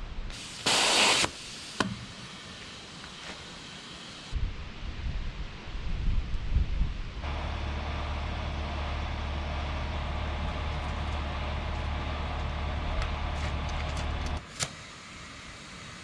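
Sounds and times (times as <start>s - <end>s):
wind noise on microphone: 4.4s - 7.2s
motor humming: 7.2s - 14.4s.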